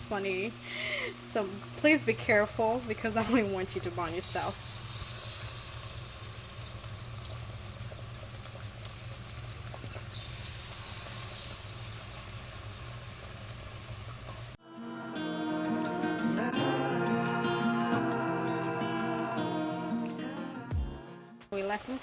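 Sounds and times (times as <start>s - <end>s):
oil sizzling deep-frying: 0.0s - 14.6s, 21.6s - 22.0s
acoustic guitar music: 14.6s - 21.7s.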